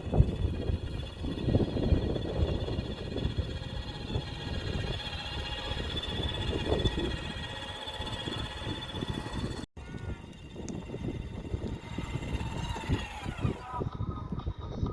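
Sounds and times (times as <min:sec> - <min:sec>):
electric motors whining: 0:00.0 - 0:14.9
wheels rumbling on ground: 0:00.0 - 0:14.9.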